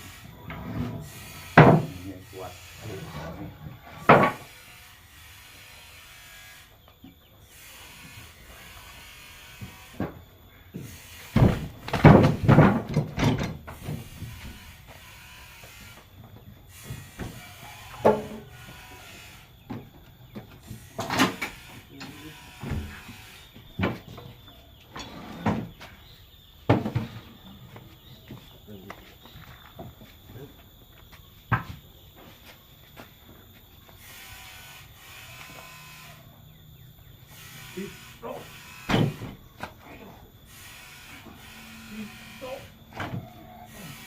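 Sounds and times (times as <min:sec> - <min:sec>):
knocks and scrapes: 0:00.0 - 0:02.0, 0:22.6 - 0:26.0.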